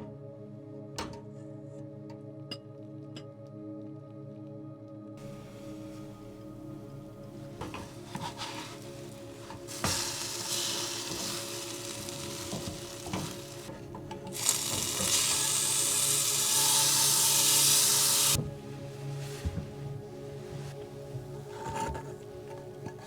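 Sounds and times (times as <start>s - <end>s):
food sizzling in a frying pan: 7.6s - 18.4s.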